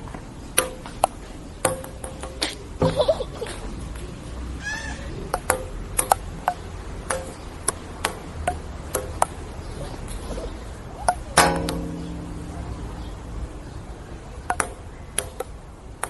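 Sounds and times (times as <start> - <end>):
table tennis ball clicking: 0.6 - 3.0, 5.3 - 9.5, 11.0 - 12.8, 14.5 - 16.0.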